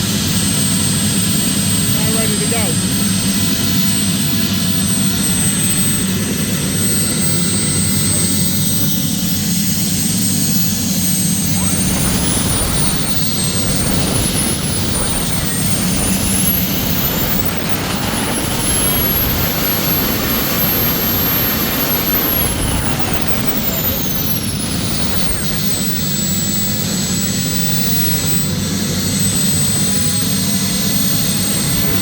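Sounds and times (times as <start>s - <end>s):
jet turbine whine: 0.0s - 32.0s.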